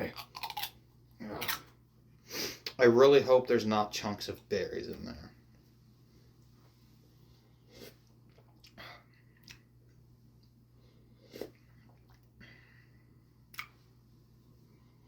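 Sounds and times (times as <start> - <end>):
person sipping and gulping: 7.6 - 12.4.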